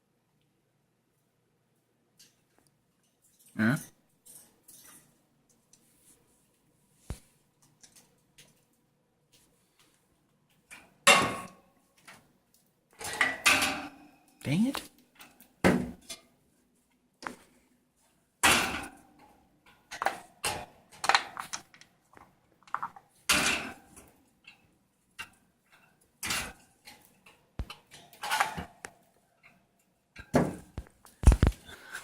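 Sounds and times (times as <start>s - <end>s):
small hard objects knocking: 21.0s - 23.0s, 30.6s - 31.6s.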